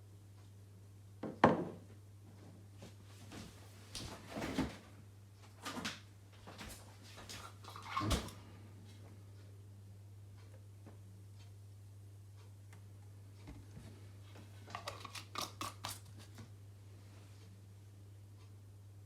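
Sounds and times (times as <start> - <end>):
steady low hum: 8.3 - 19.0.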